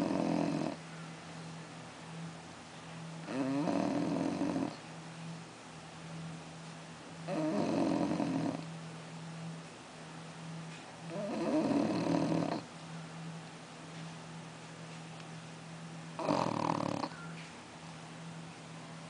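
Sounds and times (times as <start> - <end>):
puppy snoring: 0.0 - 0.8, 3.2 - 4.8, 7.2 - 8.7, 11.0 - 12.7, 16.2 - 17.3.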